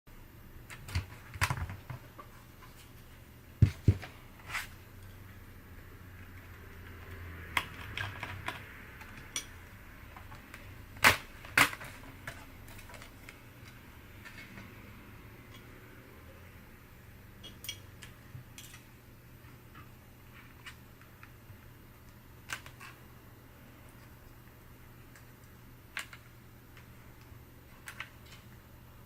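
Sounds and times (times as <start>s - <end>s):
laptop and tools clicking: 0.7s - 2.3s, 6.2s - 14.8s, 25.0s - 28.6s.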